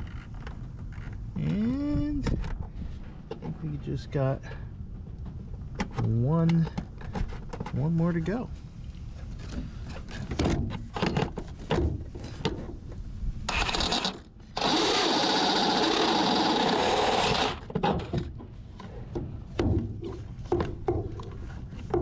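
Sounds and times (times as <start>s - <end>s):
power drill cutting: 13.5s - 17.7s.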